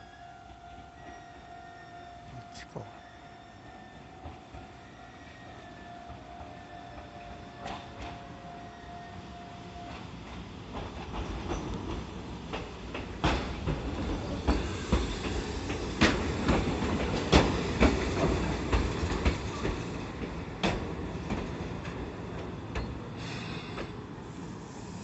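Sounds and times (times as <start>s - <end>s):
train rumble: 4.1s - 25.0s
train wheels clacking over joints: 9.9s - 24.0s.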